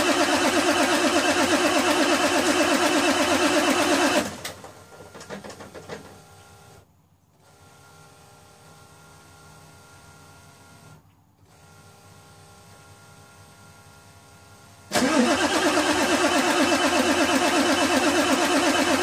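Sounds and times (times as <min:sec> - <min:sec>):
starter cranking engine: 0:00.0 - 0:05.8, 0:14.9 - 0:19.0.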